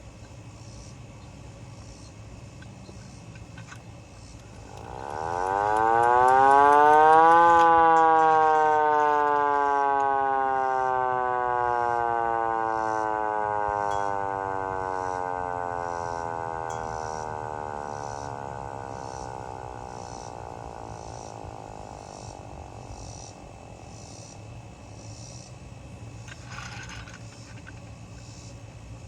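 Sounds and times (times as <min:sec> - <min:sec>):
hand-crank siren winding down: 0:04.4 - 0:23.8, 0:26.2 - 0:27.8.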